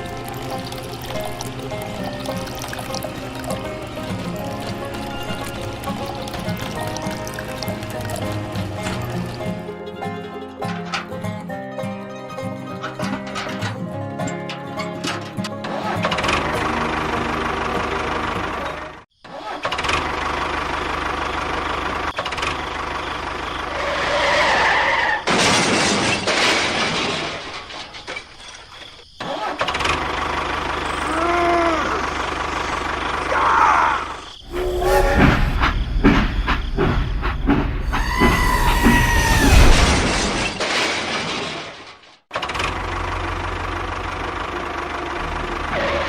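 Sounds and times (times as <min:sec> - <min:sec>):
vehicle engine running: 0:16.1 - 0:19.0, 0:20.0 - 0:24.0, 0:29.8 - 0:33.4, 0:42.5 - 0:46.0
whistle-like tones: 0:34.4 - 0:35.8, 0:37.8 - 0:39.7.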